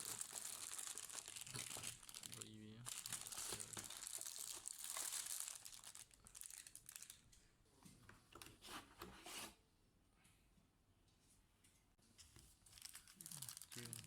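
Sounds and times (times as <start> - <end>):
packaging crinkling and rustling: 0.0 - 7.4, 12.5 - 14.0.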